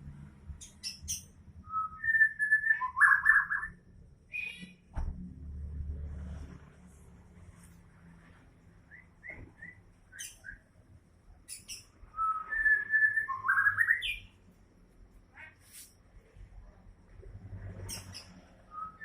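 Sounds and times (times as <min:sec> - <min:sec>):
songbird whistling and chipping: 0:00.6 - 0:04.8, 0:08.9 - 0:10.7, 0:11.4 - 0:14.3, 0:17.9 - 0:19.0.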